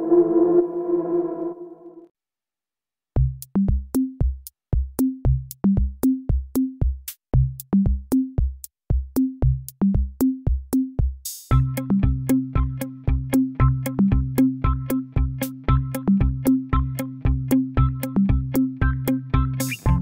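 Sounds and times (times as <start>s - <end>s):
electronic beat music: 7.8s - 20.0s.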